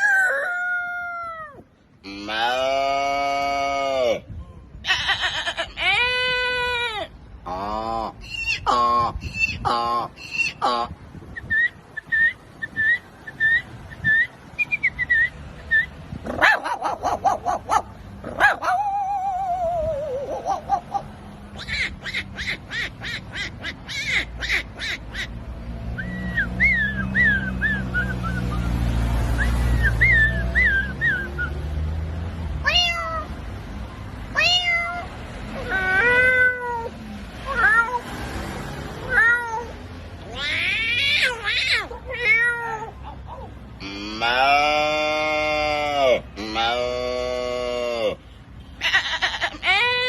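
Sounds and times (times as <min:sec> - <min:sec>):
dog yelping barks: 0:16.2 - 0:22.9, 0:40.5 - 0:43.6
cat meowing: 0:32.6 - 0:33.3, 0:34.3 - 0:38.0, 0:39.0 - 0:43.4
dog whimpering: 0:40.6 - 0:43.6.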